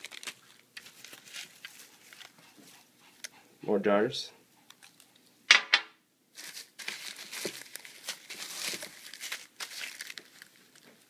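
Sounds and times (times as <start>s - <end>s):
packaging crinkling: 0.0s - 2.4s, 6.4s - 11.0s.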